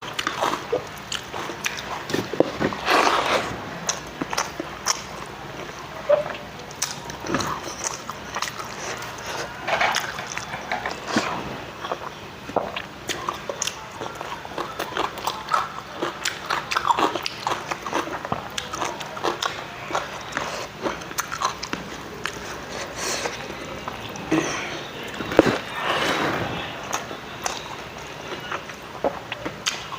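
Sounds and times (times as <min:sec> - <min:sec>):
person chewing: 0:00.0 - 0:29.9.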